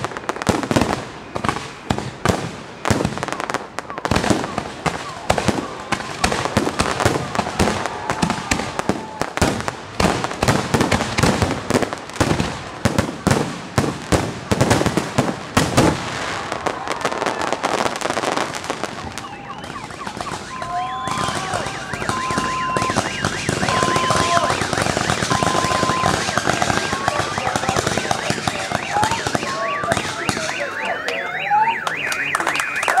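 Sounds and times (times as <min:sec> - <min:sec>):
fireworks bangs and crackles: 0:00.0 - 0:33.0
rising whistles: 0:16.6 - 0:33.0.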